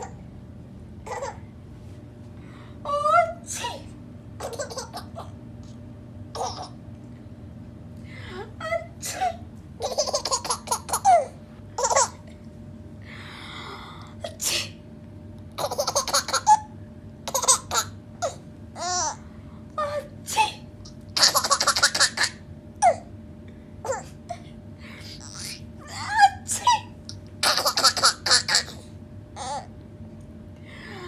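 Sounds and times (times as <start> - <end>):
young child laughing: 1.1 - 1.4, 4.4 - 5.4, 9.1 - 12.2, 15.6 - 16.7, 17.3 - 19.2, 21.2 - 23.1, 25.2 - 28.8.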